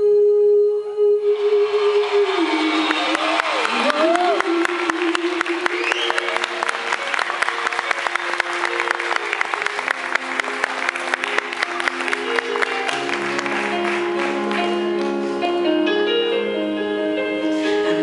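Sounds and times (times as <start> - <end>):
audience applauding: 1.4 - 15.4
sustained keyboard chords: 6.2 - 18.0.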